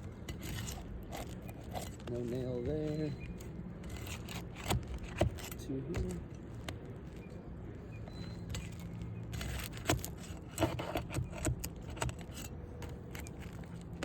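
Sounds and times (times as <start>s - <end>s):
metal pry tool scraping roof shingles: 0.0s - 6.8s, 8.1s - 14.0s.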